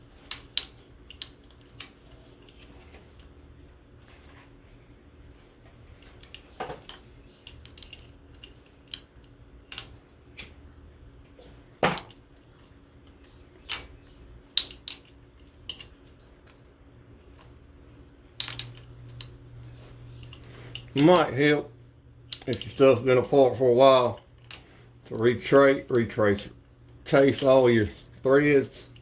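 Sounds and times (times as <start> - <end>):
metal tools clinking: 22.3 - 25.5.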